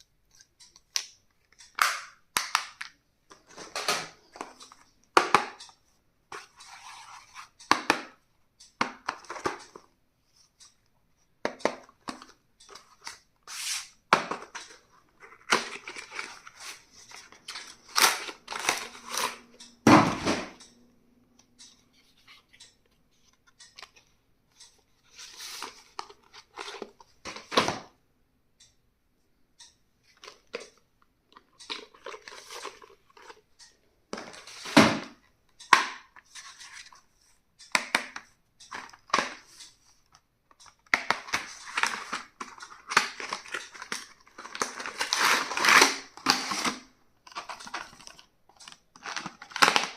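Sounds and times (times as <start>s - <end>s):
items clicking and tapping: 0.2s - 13.3s, 14.0s - 28.0s, 29.6s - 49.9s
packaging crinkling and tearing: 41.2s - 49.9s.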